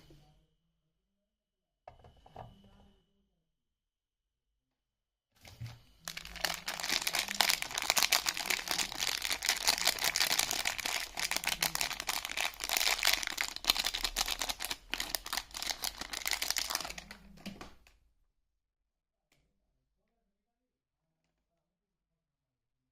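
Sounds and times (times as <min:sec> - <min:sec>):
wrapper crinkling: 0:06.0 - 0:17.4.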